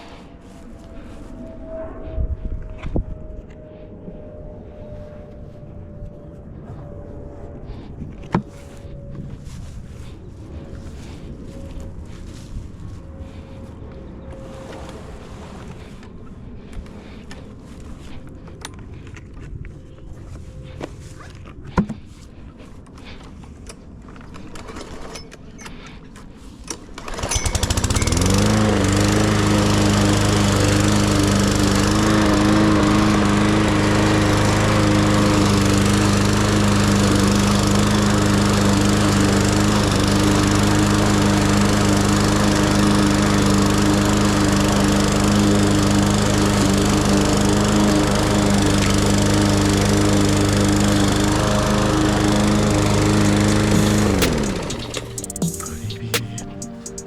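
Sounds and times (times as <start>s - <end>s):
lawn mower engine: 27.0s - 57.0s.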